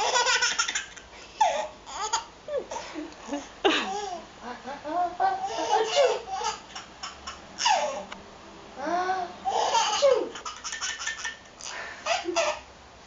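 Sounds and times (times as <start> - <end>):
baby laughing: 0.0 - 8.1, 9.4 - 12.7
baby squealing: 5.5 - 8.1, 9.5 - 11.4.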